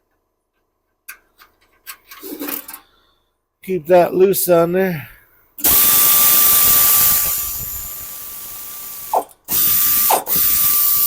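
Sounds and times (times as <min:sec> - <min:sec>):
power tool motor whine: 0:05.6 - 0:11.0.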